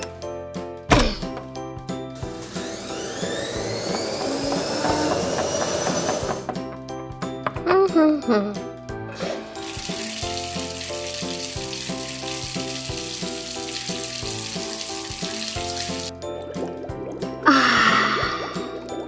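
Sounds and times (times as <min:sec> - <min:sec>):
light background music: 0:00.0 - 0:19.0
running water hissing: 0:02.3 - 0:06.4, 0:09.2 - 0:16.1, 0:17.4 - 0:18.8.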